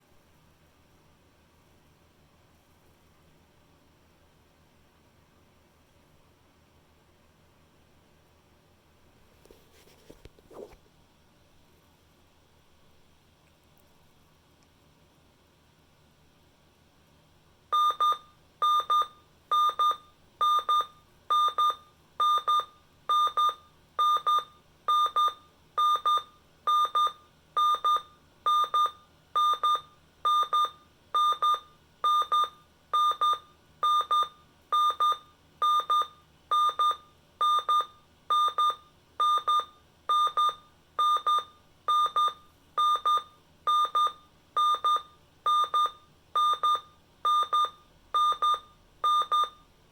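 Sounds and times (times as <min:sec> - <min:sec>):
high electronic alarm beeps: 0:17.8 - 0:49.6.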